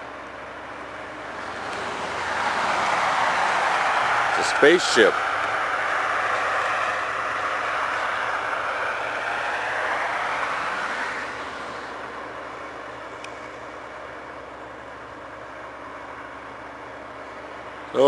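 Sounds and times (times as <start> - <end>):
engine hum: 0.0 - 18.0
combine harvester machinery rushing: 1.0 - 14.2.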